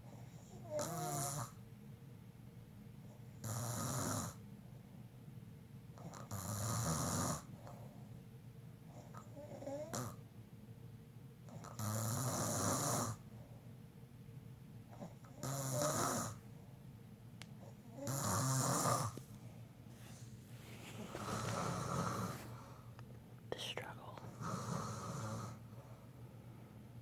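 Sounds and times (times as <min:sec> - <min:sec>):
person snoring: 0:18.0 - 0:19.2, 0:21.1 - 0:22.6.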